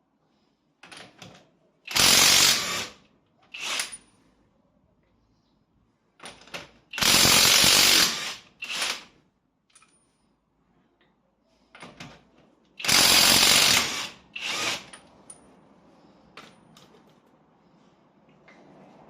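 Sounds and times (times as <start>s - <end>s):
impact wrench bursts: 1.9s - 4.0s, 6.9s - 9.1s, 12.8s - 15.1s.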